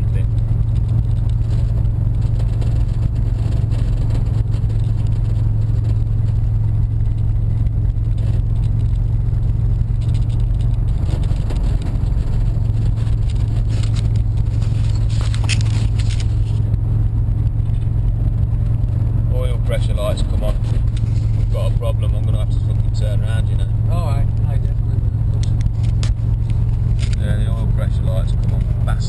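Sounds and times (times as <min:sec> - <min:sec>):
car engine droning: 0:00.0 - 0:29.0
scraping rustles: 0:09.7 - 0:16.8, 0:19.8 - 0:21.8.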